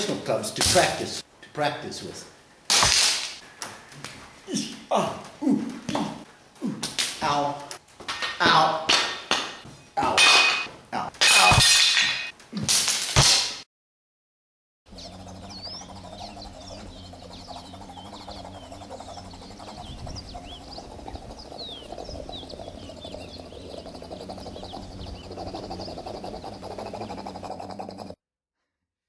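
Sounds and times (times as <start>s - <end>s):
birds chirping: 14.9s - 28.2s
person imitating helicopter with lips: 14.9s - 28.2s.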